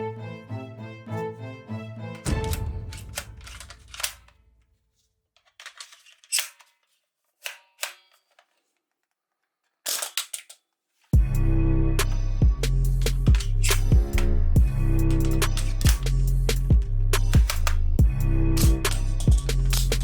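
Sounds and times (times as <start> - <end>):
toy gun clicks and snaps: 2.3 - 4.4, 5.6 - 6.7, 7.4 - 8.4, 9.9 - 10.7, 12.9 - 14.3, 15.0 - 17.9, 18.6 - 20.0
loud music with a beat: 11.2 - 20.0.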